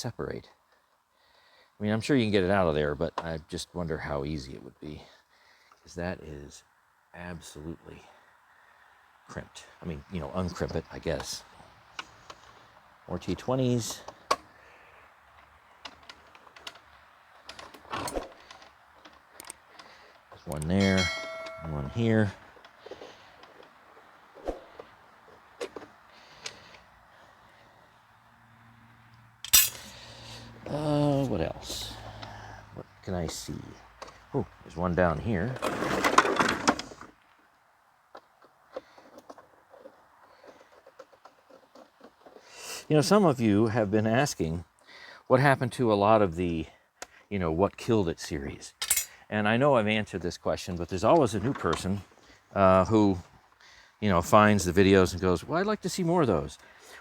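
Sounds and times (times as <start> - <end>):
handling and scraping plastic: 35.0 - 37.2, 38.2 - 42.7
plastic parts being moved: 35.2 - 37.3, 38.2 - 42.5.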